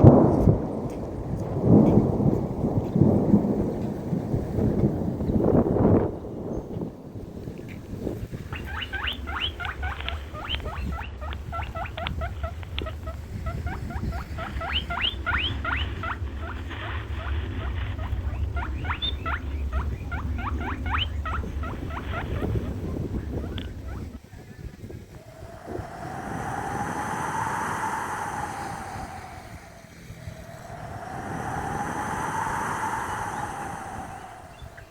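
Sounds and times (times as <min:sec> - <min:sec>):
quick rising animal chirps: 0:08.5 - 0:16.2, 0:16.8 - 0:22.8, 0:25.2 - 0:34.9
steady low hum: 0:25.1 - 0:34.9.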